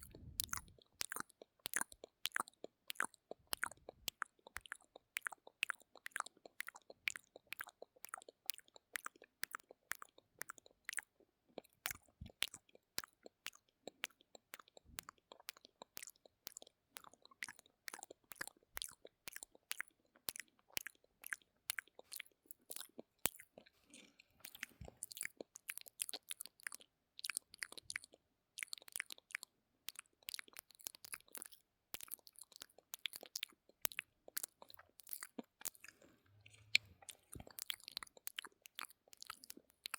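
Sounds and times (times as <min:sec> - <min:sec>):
lip and tongue clicks: 0:00.0 - 0:39.9.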